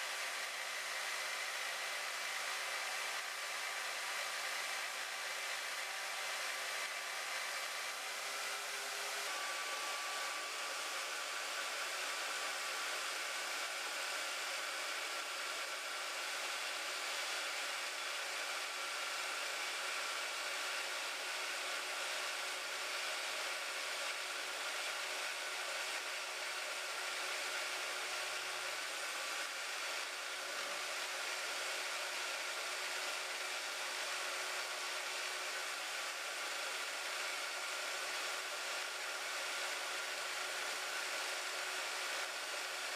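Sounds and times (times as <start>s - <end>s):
band saw whirring: 0.0s - 26.3s.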